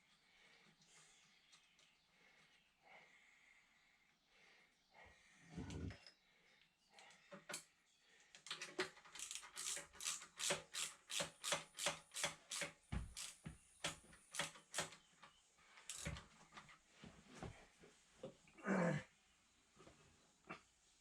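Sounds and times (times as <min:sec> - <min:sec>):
ratchet wrench clicking: 0:09.2 - 0:15.0, 0:15.9 - 0:16.1.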